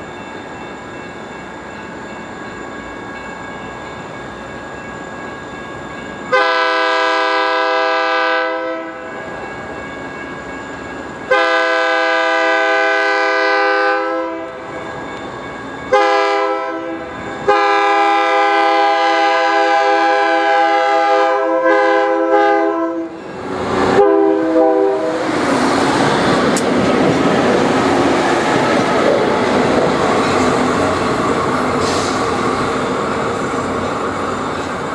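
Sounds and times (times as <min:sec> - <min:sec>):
train rumble and wheel noise: 0:00.0 - 0:34.9
train horn blasts: 0:06.3 - 0:09.1, 0:11.3 - 0:14.6, 0:15.9 - 0:23.2, 0:23.8 - 0:25.5.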